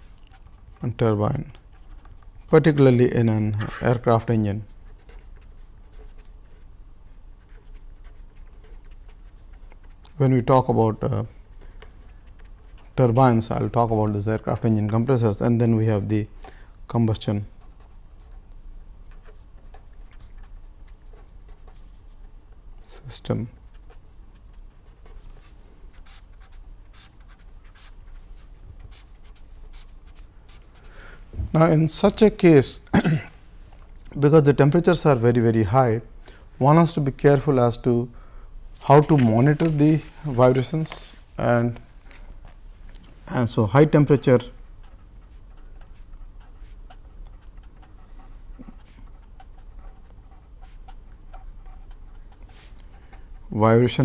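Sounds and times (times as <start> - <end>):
low steady hum: 0.0 - 54.0
pen scratching on paper: 3.6 - 10.3, 22.8 - 30.9, 44.1 - 53.5.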